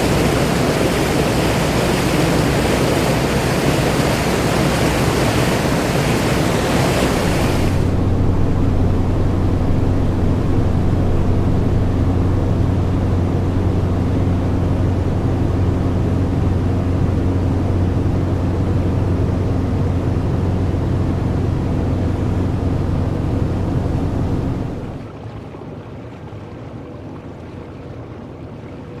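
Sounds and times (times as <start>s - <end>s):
loud hiss of water: 0.0s - 8.1s
boat engine drone: 0.0s - 25.2s
water rushing along hull: 0.0s - 29.0s.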